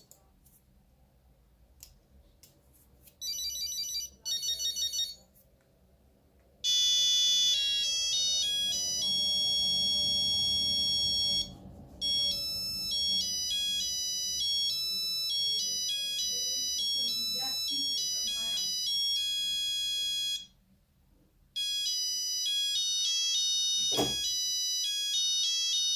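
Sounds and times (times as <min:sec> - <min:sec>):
monophonic phone ringtone: 0:03.2 - 0:05.3, 0:06.6 - 0:20.6, 0:21.6 - 0:25.9.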